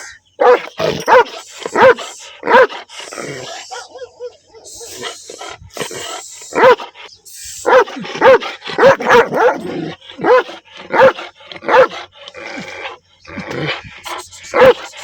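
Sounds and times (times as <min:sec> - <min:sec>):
dog barking: 0:00.4 - 0:02.9, 0:03.7 - 0:05.2, 0:06.5 - 0:07.0, 0:07.6 - 0:12.1, 0:14.5 - 0:15.0.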